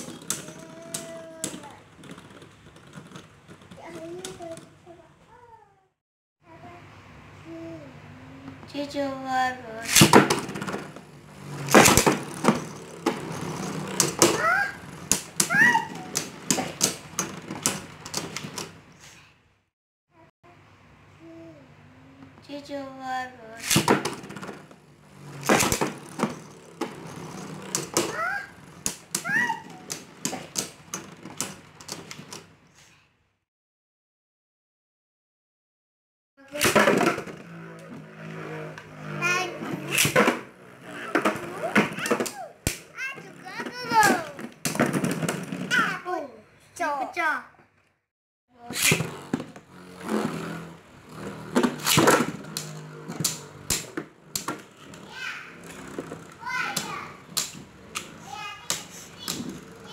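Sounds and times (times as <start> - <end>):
plastic parts clicking and knocking: 0.0 - 4.9, 9.9 - 18.8, 23.6 - 32.6, 39.8 - 46.0, 50.4 - 59.9
spinning tops whirring: 9.8 - 18.7, 23.6 - 32.1, 36.5 - 45.9, 48.6 - 59.9.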